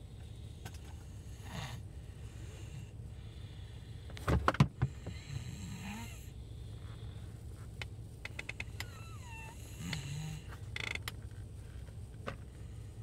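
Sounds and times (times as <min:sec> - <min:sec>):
soft breathing: 0:00.0 - 0:07.8, 0:11.6 - 0:13.0
person snoring: 0:05.1 - 0:06.3, 0:08.9 - 0:10.5.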